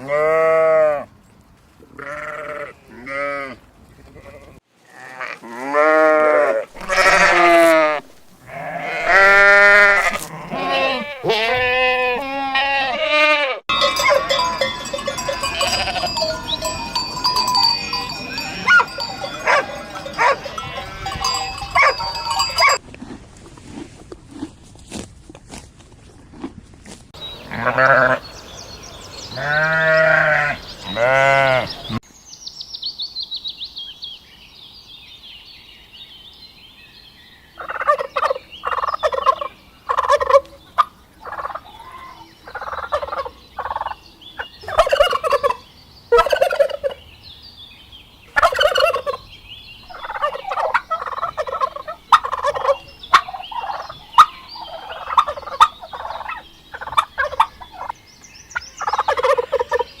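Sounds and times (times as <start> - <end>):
sheep or goat bleating: 0.0 - 1.1, 1.9 - 3.6, 4.2 - 14.4, 15.2 - 16.6, 17.7 - 22.8, 27.4 - 28.3, 29.3 - 32.0
turkeys gobbling: 17.8 - 20.6, 37.6 - 41.7, 42.5 - 44.0, 44.7 - 47.0, 48.4 - 49.2, 49.9 - 58.0, 58.8 - 59.9.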